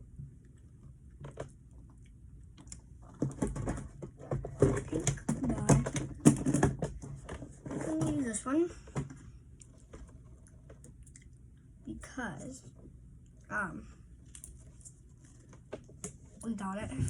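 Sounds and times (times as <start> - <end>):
plastic containers clattering: 3.1 - 9.2.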